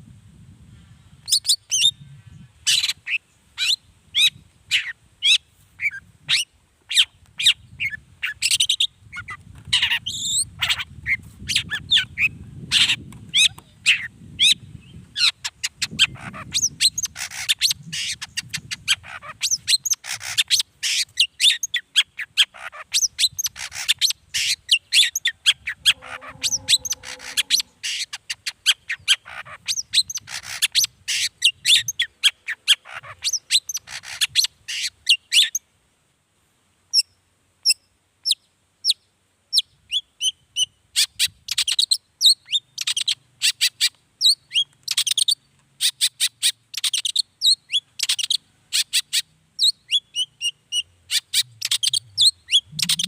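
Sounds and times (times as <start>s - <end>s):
shrike singing sharp chirps: 25.4s - 28.1s, 50.2s - 53.0s.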